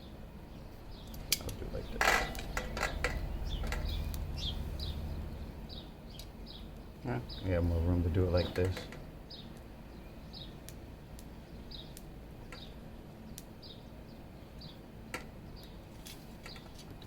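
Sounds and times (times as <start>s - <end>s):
outdoor background noise: 0.0s - 17.0s
small bird chirping: 0.0s - 17.0s
faint sharp clicks: 13.3s - 13.5s.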